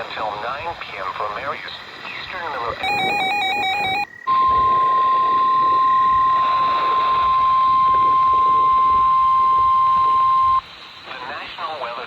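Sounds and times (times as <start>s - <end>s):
faint radio static: 0.0s - 4.0s, 10.0s - 12.0s
loud steady alert tone: 2.8s - 4.7s.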